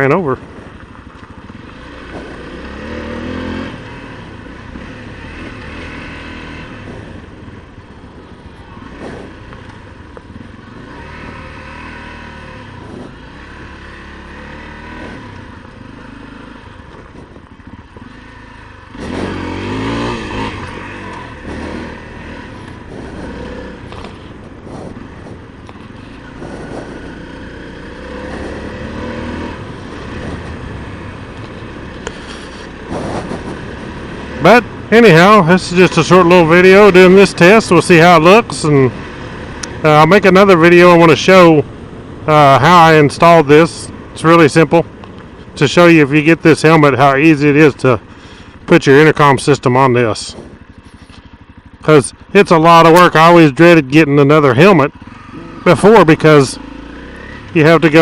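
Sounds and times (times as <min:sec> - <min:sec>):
motorcycle engine running: 0:00.0 - 0:58.0
wind noise: 0:32.2 - 0:34.0.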